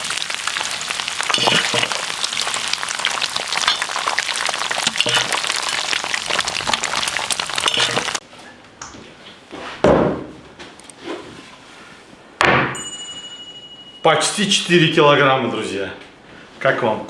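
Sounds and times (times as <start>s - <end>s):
potatoes sizzling in fat: 0.0s - 8.2s.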